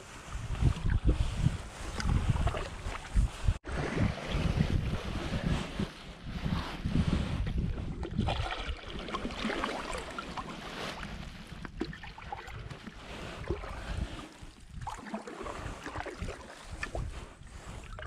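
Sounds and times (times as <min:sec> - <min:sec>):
wind buffeting microphone: 0:00.0 - 0:10.0, 0:10.7 - 0:18.0
water splashing around canoe: 0:00.0 - 0:18.0.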